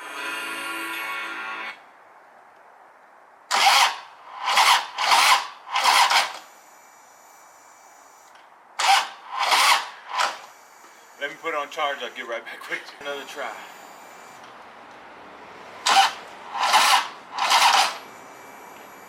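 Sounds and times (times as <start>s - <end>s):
motorcycle starter cranking: 3.5s - 6.5s, 8.8s - 10.5s, 15.8s - 18.0s.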